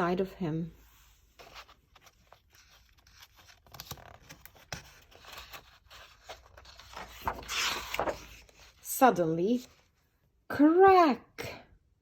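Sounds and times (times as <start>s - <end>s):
paper pages rustling: 0.9s - 10.0s.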